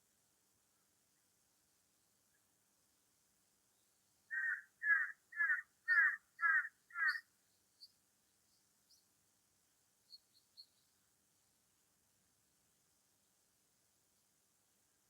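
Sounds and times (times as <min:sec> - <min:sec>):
small bird chirping: 0:03.8 - 0:09.1, 0:10.0 - 0:11.0
bird calling: 0:04.3 - 0:07.2.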